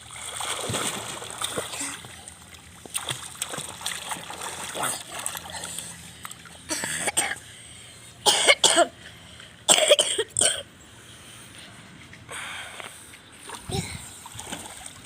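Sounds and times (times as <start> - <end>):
boy coughing: 6.7 - 7.4, 8.3 - 8.9, 9.7 - 10.6.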